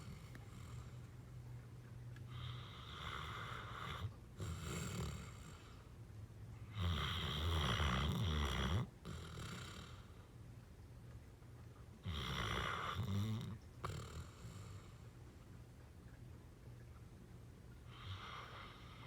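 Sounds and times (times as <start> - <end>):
dog snoring: 2.3 - 5.9, 6.7 - 10.3, 12.0 - 15.1, 17.9 - 19.0.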